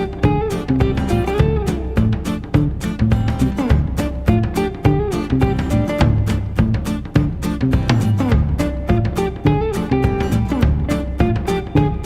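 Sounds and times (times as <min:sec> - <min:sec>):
plucked guitar music: 0:00.0 - 0:12.0
steady percussive beat: 0:00.0 - 0:12.0.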